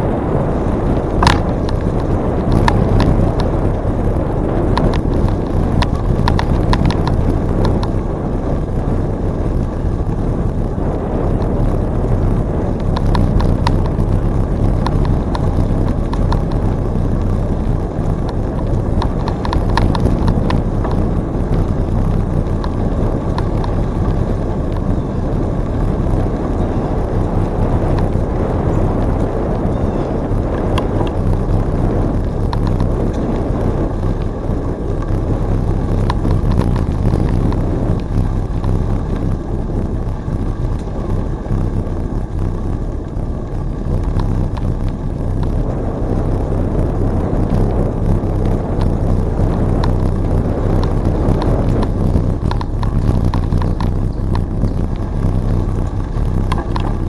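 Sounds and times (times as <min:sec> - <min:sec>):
bicycle tyres rolling on trail: 0:00.0 - 0:57.0
wind rumbling on microphone: 0:00.0 - 0:57.0
faint ticks: 0:00.8 - 0:08.9, 0:11.2 - 0:57.0.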